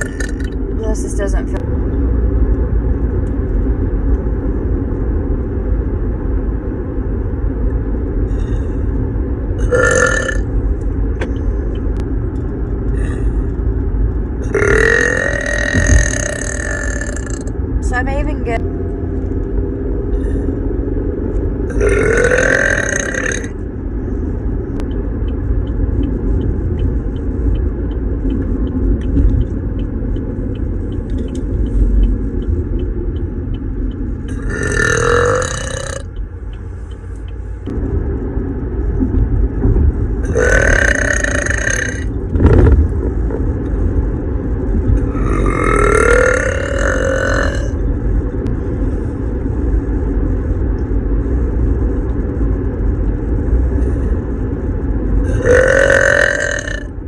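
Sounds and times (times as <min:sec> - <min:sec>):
woman burping loudly: 0:00.0 - 0:00.6, 0:09.6 - 0:10.4, 0:14.4 - 0:17.5, 0:21.7 - 0:23.6, 0:34.3 - 0:36.1, 0:40.3 - 0:42.1, 0:45.1 - 0:47.8, 0:55.3 - 0:56.9
steady low rumble: 0:00.0 - 0:57.0.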